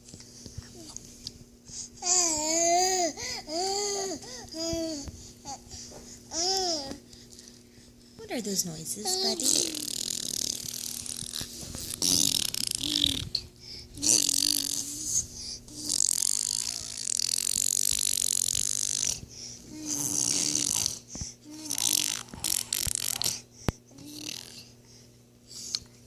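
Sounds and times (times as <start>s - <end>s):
child grunting: 9.0s - 10.4s
child making hissing mouth noises: 14.0s - 23.4s, 24.0s - 24.7s.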